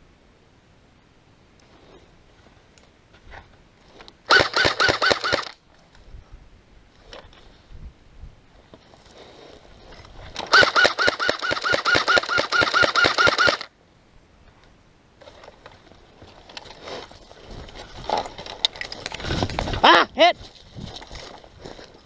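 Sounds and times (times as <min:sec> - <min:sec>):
airsoft gun full-auto burst: 0:04.3 - 0:05.6, 0:10.5 - 0:13.7
rustling: 0:14.4 - 0:22.0.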